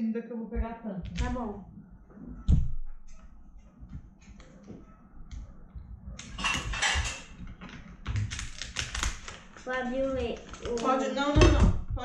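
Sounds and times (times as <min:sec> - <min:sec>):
utensils clattering: 0:06.2 - 0:11.6
kitchen utensils tapping and clicking: 0:06.2 - 0:12.0.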